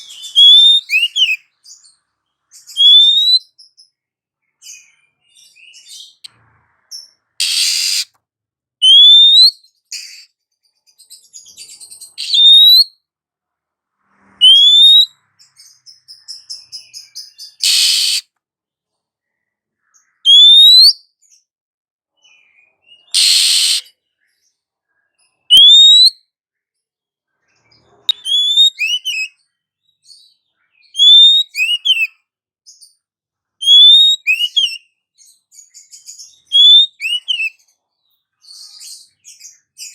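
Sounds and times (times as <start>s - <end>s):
bird whistled notes: 0.0s - 1.4s, 2.7s - 3.6s, 7.4s - 8.1s, 8.8s - 10.3s, 12.2s - 12.9s, 14.4s - 15.2s, 16.1s - 18.2s, 20.3s - 21.0s, 23.0s - 24.0s, 25.5s - 26.2s, 28.1s - 29.4s, 30.8s - 32.1s, 33.6s - 34.8s, 36.4s - 37.6s
bird harsh rasping calls: 0.0s - 1.5s, 7.4s - 8.1s, 8.8s - 10.3s, 12.1s - 12.9s, 14.2s - 18.2s, 23.0s - 23.9s, 27.8s - 29.4s, 31.0s - 32.1s, 33.6s - 34.8s, 36.4s - 37.6s.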